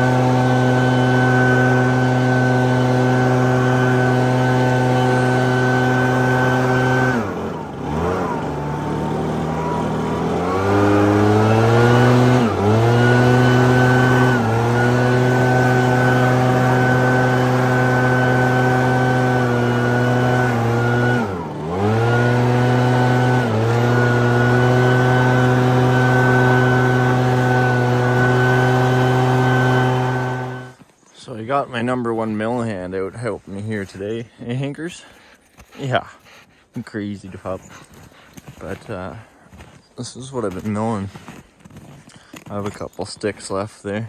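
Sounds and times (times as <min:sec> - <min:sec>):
backpack blower running: 0:00.0 - 0:30.9, 0:37.6 - 0:39.8.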